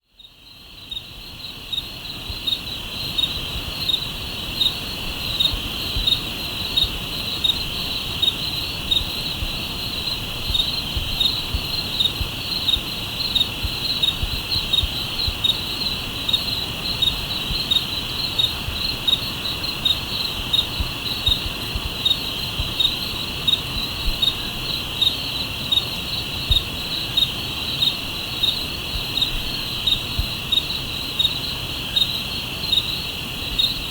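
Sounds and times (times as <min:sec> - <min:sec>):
insect chirping: 0:00.2 - 0:33.9
insects trilling: 0:00.2 - 0:33.9.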